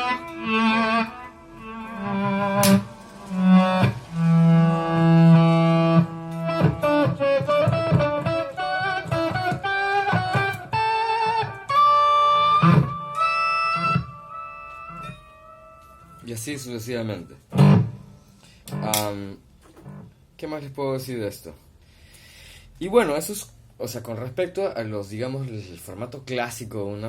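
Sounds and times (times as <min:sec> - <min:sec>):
electric guitar with heavy delay: 0:00.0 - 0:19.0.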